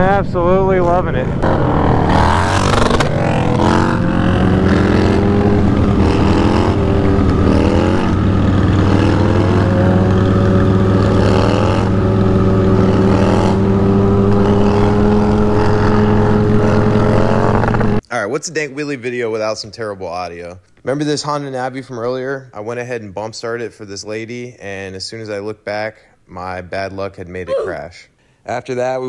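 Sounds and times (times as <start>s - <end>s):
motorcycle engine revving: 0.7s - 18.0s.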